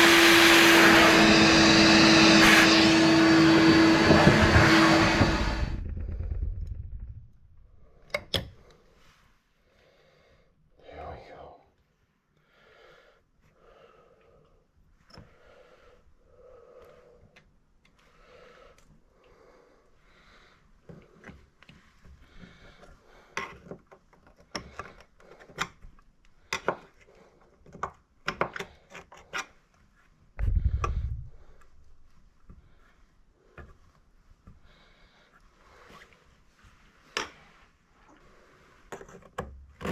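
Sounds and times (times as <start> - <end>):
heavy low thump: 30.4 - 31.4.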